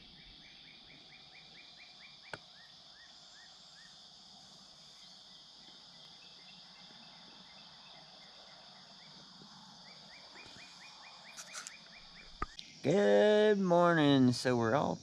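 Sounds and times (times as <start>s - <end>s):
insects trilling: 0.0s - 15.0s.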